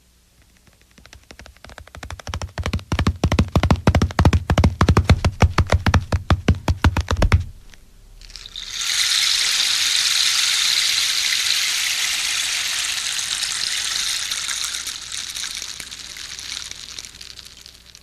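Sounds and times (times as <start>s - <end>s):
horse urinating: 8.3s - 18.0s.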